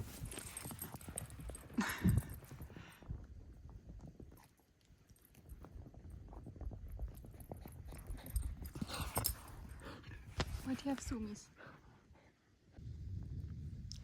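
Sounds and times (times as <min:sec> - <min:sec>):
wind rumbling on microphone: 0:05.5 - 0:10.8, 0:12.8 - 0:14.0.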